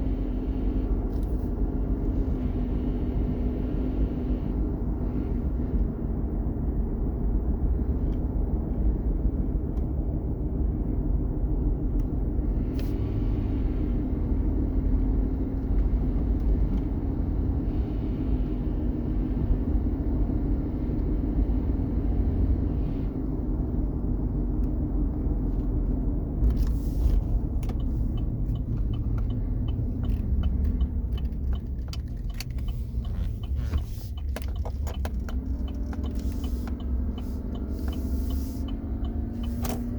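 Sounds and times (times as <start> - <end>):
pickup truck engine rumble: 13.0 - 39.9
undercarriage whine: 27.4 - 39.9.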